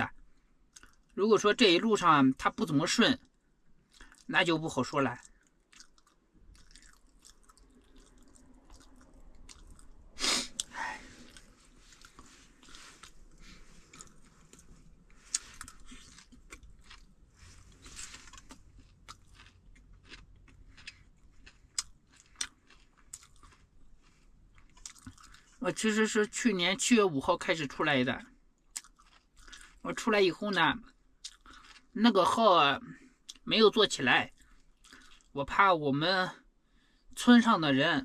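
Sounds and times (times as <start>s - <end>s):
person chewing rice: 0.7s - 1.2s, 3.9s - 4.3s, 5.2s - 25.6s, 28.7s - 30.0s, 30.8s - 32.0s, 34.3s - 35.3s.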